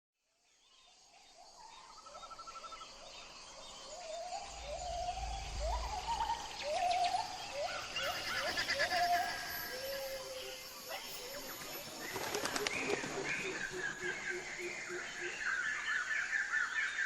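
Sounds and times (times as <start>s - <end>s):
bird calling: 3.9s - 17.0s
low rumble: 4.2s - 7.9s.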